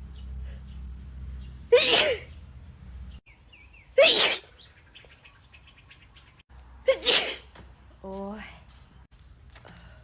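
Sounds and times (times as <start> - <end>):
woman sneezing: 6.9 - 7.5.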